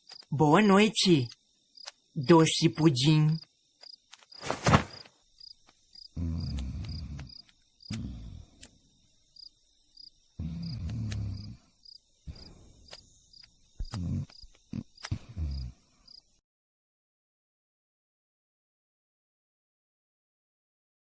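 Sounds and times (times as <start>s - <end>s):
cricket chirping: 0.0s - 16.4s.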